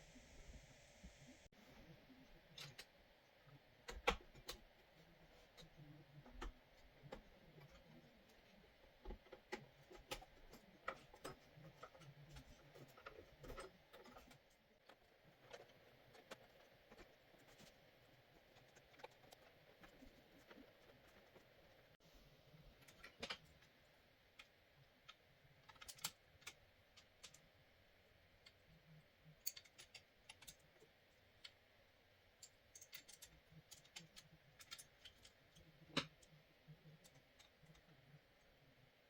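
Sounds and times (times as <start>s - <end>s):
hands handling computer parts: 3.9s - 22.0s.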